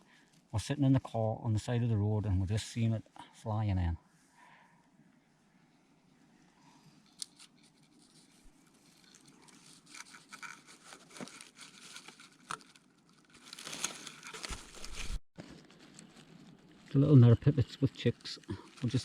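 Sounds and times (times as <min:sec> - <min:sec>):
close rustling and crinkling: 0:06.2 - 0:19.0.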